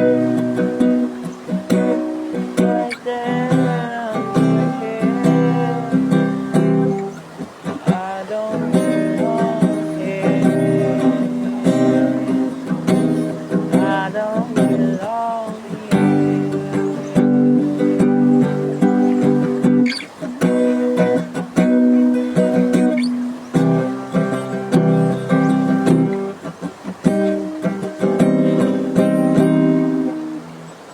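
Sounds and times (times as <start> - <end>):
acoustic guitar strumming: 0.0 - 30.9
person singing wordlessly: 2.3 - 21.4.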